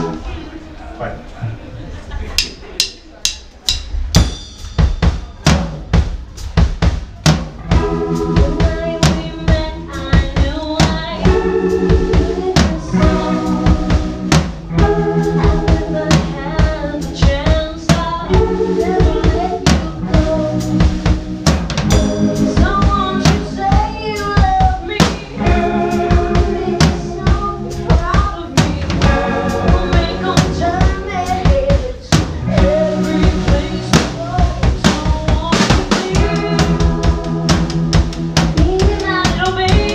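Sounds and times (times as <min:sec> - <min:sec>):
rock band playing chords: 0:00.0 - 0:00.6, 0:02.8 - 0:39.9
drum kit beat: 0:02.4 - 0:39.9.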